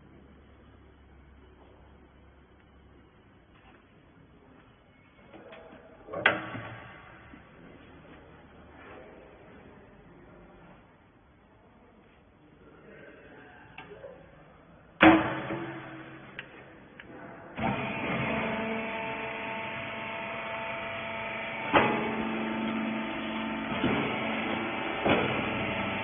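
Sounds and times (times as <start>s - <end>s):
motor and hydraulic pump hum: 15.0s - 26.0s.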